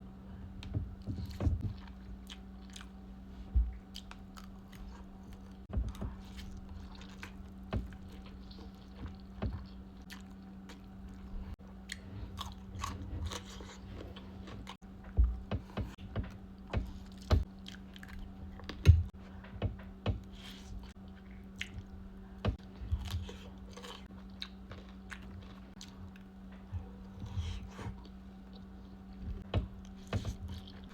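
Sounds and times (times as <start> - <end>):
steady low hum: 0.0 - 30.9
person chewing and crunching: 1.2 - 14.8, 16.9 - 18.8, 20.4 - 28.9.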